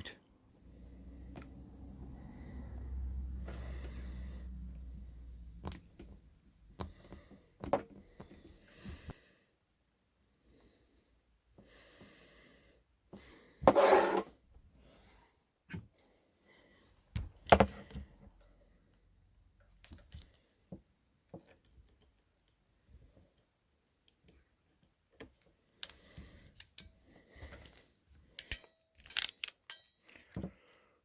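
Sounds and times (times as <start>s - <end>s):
small clicks and knocks: 24.0s - 30.6s.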